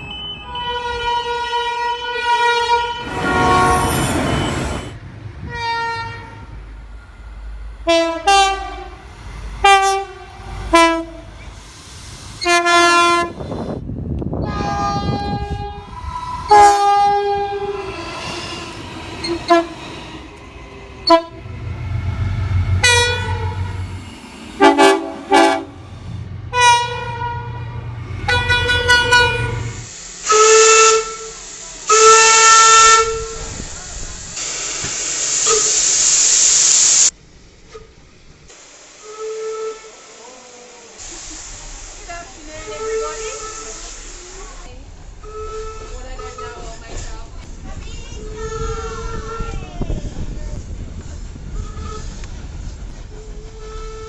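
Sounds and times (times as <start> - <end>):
rumble of passing trains: 0.0 - 54.0
train horn blasts: 0.5 - 13.8, 14.4 - 31.3, 31.9 - 33.4.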